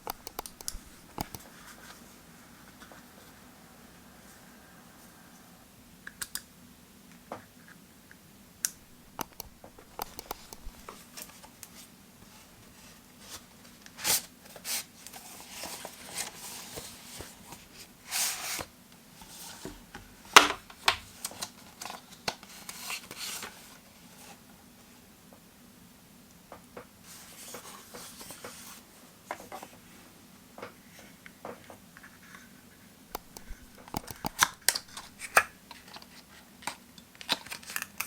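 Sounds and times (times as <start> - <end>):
clicks and taps: 0.0 - 1.5, 8.7 - 10.9, 33.1 - 35.5.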